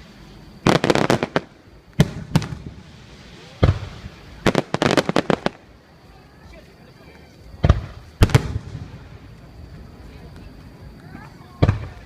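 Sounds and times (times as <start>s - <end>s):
fireworks bangs: 0.6s - 5.8s, 7.5s - 9.4s, 11.0s - 12.0s
deep firework boom: 0.7s - 5.6s, 7.6s - 9.3s.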